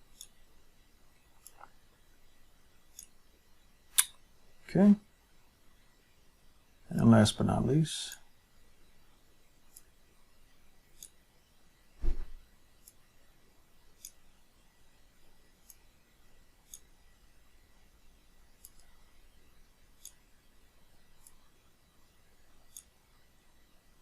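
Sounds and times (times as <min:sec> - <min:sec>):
computer mouse clicking: 0:00.1 - 0:00.4, 0:11.0 - 0:11.2, 0:14.0 - 0:14.2, 0:16.6 - 0:16.9, 0:18.6 - 0:19.0, 0:20.0 - 0:20.2, 0:22.6 - 0:22.9
dull low thump: 0:12.0 - 0:12.4.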